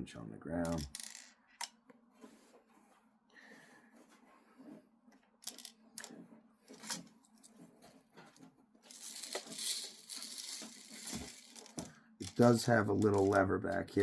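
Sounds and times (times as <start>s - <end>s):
metal pellets clicking and rattling: 0.6s - 1.4s, 8.9s - 14.0s
handling rustle: 5.5s - 13.9s.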